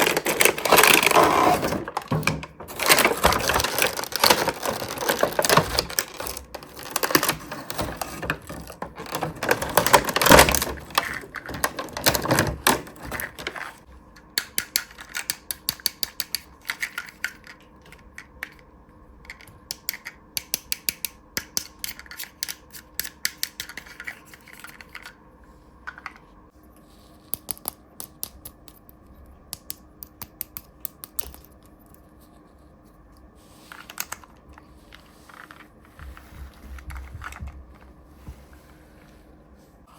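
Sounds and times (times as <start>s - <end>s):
toy packaging crinkling: 0.0s - 13.8s
plastic toy pieces clicking: 14.4s - 18.6s, 19.3s - 25.2s.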